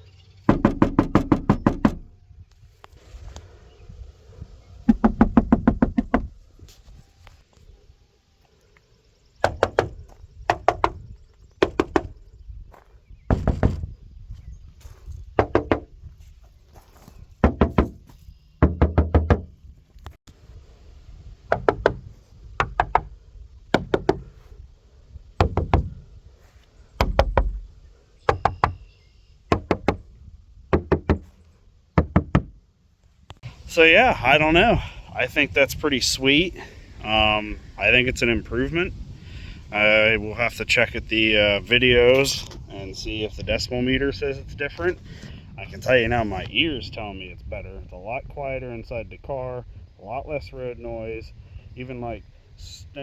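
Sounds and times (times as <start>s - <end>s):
knuckles knocking on car panels: 0.5s - 2.1s, 4.9s - 6.3s, 9.4s - 11.0s, 11.6s - 12.1s, 15.4s - 15.9s, 17.4s - 19.5s, 21.5s - 22.0s, 22.6s - 23.1s, 23.8s - 24.3s, 25.4s - 26.0s, 27.0s - 27.7s, 28.3s - 28.8s, 29.5s - 30.0s, 30.7s - 31.3s, 32.0s - 32.5s.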